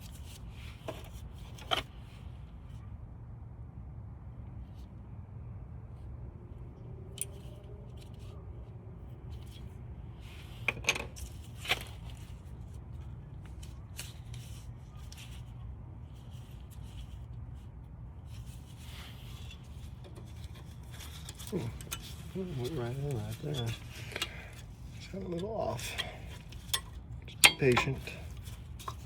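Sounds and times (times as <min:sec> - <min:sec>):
steady low hum: 0:00.0 - 0:29.0
metallic clicks of brake parts: 0:25.8 - 0:29.0.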